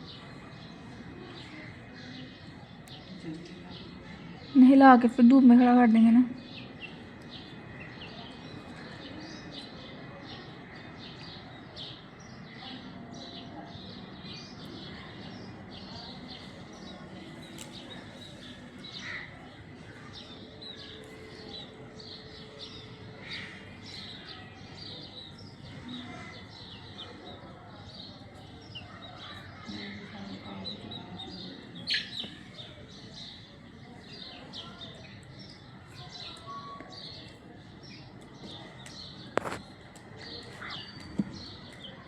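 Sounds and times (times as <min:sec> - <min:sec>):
small birds chirping: 0:00.0 - 0:42.0.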